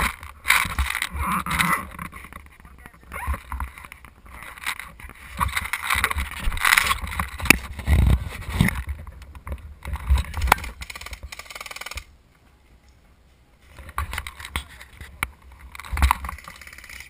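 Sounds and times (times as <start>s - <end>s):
rustling and bumping of camera: 0.0s - 12.1s, 13.6s - 17.0s
wind rubbing on camera: 0.0s - 12.1s, 13.7s - 17.0s
sharp clicks: 10.2s - 12.1s, 15.9s - 17.0s.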